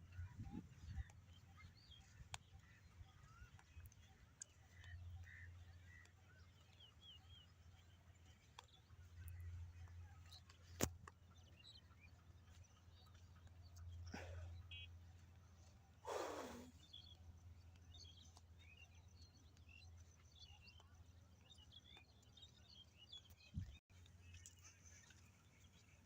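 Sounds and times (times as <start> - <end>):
faint bird chirps: 11.5 - 26.0.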